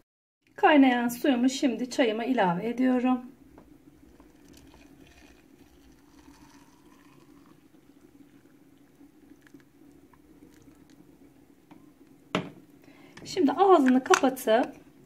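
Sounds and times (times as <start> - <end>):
water pouring from a kettle: 4.0 - 11.1.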